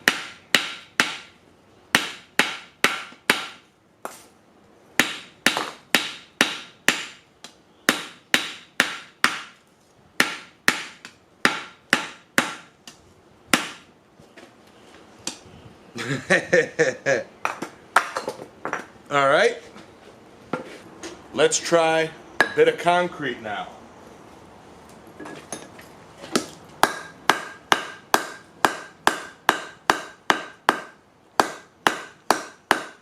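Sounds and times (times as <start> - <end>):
hammer striking metal on anvil: 22.4 - 22.6, 26.8 - 33.0.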